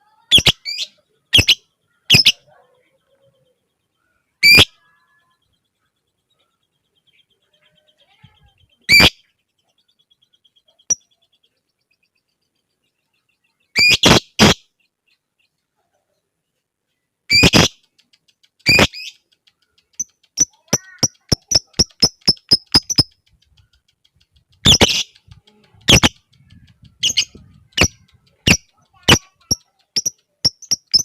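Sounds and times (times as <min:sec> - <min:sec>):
lovebird shrill calls: 0:00.3 - 0:02.4, 0:04.4 - 0:04.8, 0:08.9 - 0:09.2, 0:13.8 - 0:14.6, 0:17.3 - 0:17.8, 0:18.6 - 0:19.2, 0:20.4 - 0:23.1, 0:24.6 - 0:25.2, 0:25.9 - 0:26.2, 0:27.0 - 0:31.0
faint rapid trill: 0:17.3 - 0:31.0.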